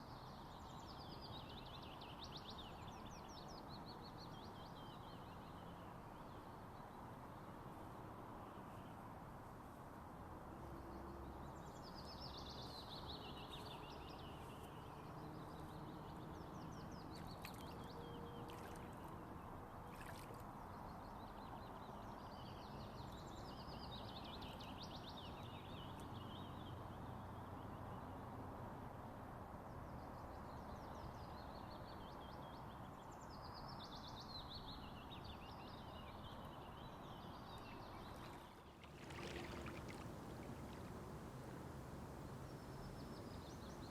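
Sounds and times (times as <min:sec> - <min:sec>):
songbird singing: 0:10.7 - 0:28.0, 0:30.2 - 0:43.9
steady hiss of water: 0:37.8 - 0:43.9.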